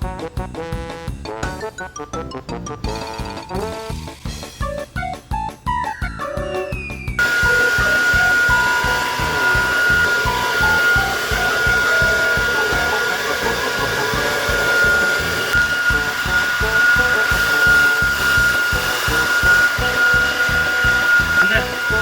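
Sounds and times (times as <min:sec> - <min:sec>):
light background music: 0:00.0 - 0:22.0
blow dryer running: 0:07.2 - 0:22.0.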